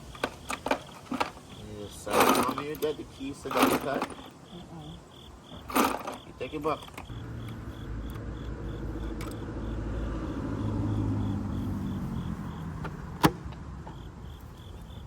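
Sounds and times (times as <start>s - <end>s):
vehicle engine running: 5.6s - 15.0s.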